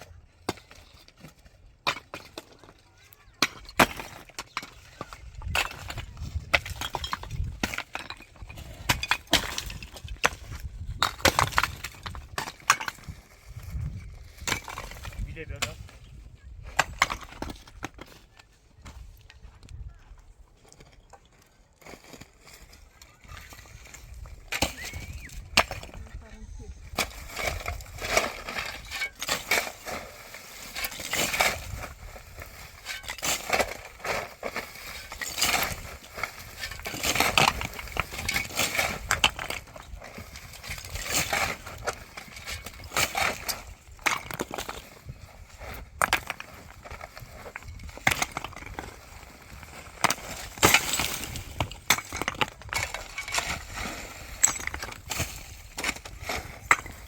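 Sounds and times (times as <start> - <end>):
building debris knocking and cracking: 45.9 - 57.0.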